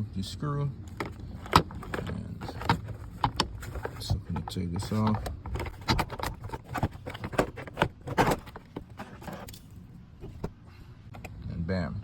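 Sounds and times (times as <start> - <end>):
scraping rustle: 0.9 - 10.4.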